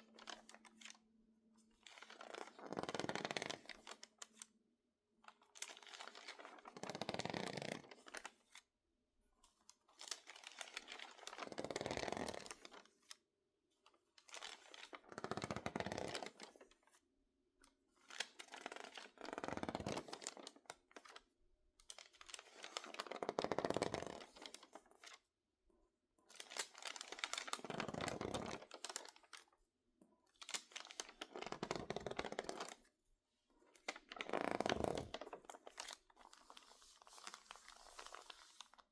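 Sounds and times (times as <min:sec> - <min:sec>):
magazine pages crinkling: 0:30.4 - 0:32.8, 0:33.8 - 0:38.8.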